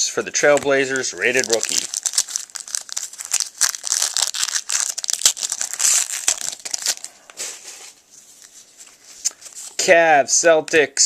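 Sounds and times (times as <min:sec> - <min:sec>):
foil wrapper crinkling: 0:00.4 - 0:07.5.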